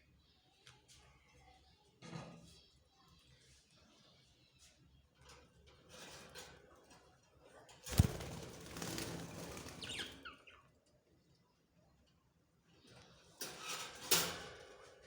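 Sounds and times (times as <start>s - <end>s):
budgies chirping: 7.9s - 10.6s
budgies fluttering: 7.9s - 10.6s.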